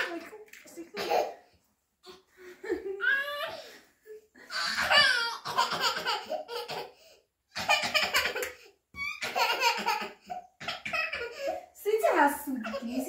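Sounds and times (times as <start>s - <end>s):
child laughing: 2.6s - 3.7s.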